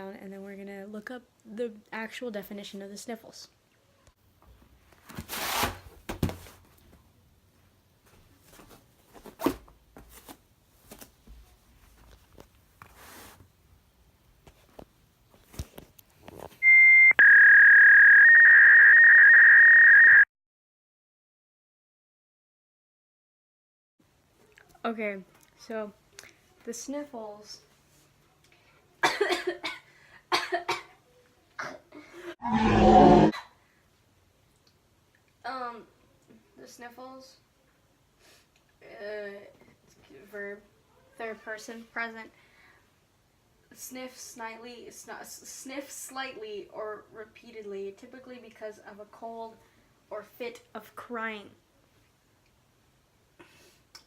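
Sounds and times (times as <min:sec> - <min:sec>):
yoga mat rustling: 0:04.8 - 0:07.0, 0:08.0 - 0:13.5
mat thumping on floor: 0:05.1 - 0:06.6
woman coughing: 0:29.0 - 0:31.0.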